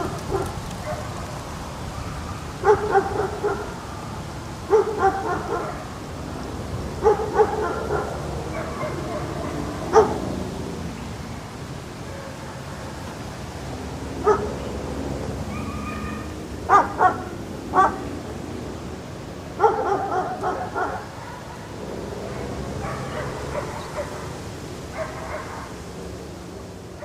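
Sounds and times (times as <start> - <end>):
dog barking and yipping: 0.0 - 1.2, 2.6 - 3.8, 4.7 - 5.9, 7.0 - 10.2, 14.2 - 14.5, 15.5 - 18.0, 19.6 - 21.7, 22.3 - 25.8.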